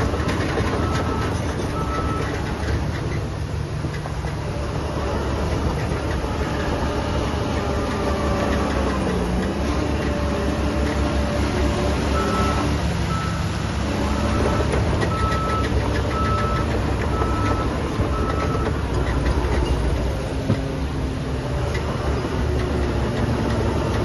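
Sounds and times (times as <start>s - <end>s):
diesel machinery engine running: 0.0s - 24.0s
reversing alarm beeping: 12.2s - 13.5s, 14.1s - 18.8s.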